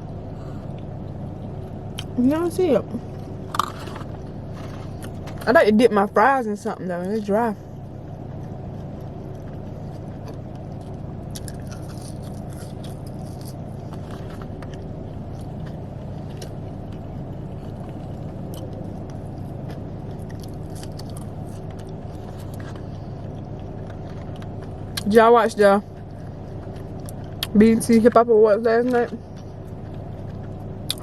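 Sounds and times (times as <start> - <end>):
low hum: 0.0 - 31.0
person chewing food: 3.0 - 5.4, 7.8 - 25.1, 25.9 - 27.5, 29.3 - 31.0.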